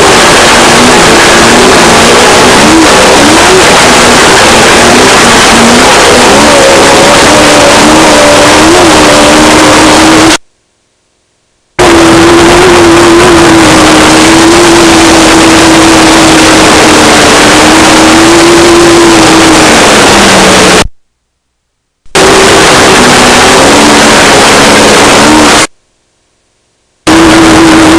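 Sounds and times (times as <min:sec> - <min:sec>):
dense rushing noise: 0:00.0 - 0:10.4, 0:11.8 - 0:20.9
race car engine running hard: 0:00.0 - 0:10.4, 0:11.8 - 0:20.8, 0:22.2 - 0:25.7, 0:27.1 - 0:27.9.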